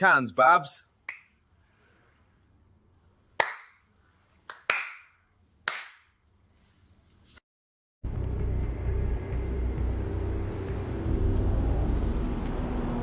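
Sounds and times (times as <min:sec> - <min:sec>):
sharp claps: 0:01.1 - 0:01.4, 0:03.4 - 0:06.2.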